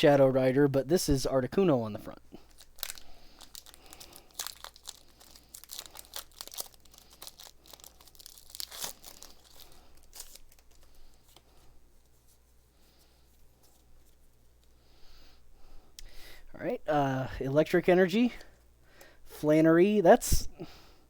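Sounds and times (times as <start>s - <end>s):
foil wrapper tearing and crinkling: 2.5s - 11.3s.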